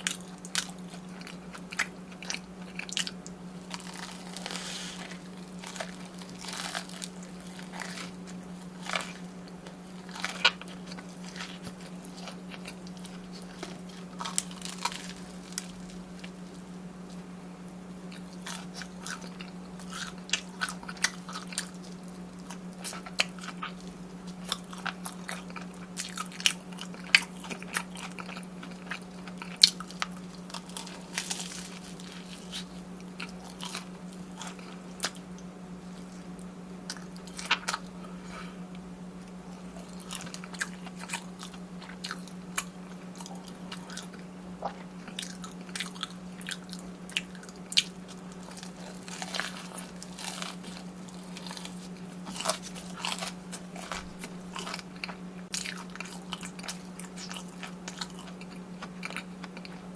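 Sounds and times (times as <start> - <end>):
crunching and chewing: 0.0 - 59.9
low hum: 1.3 - 20.2.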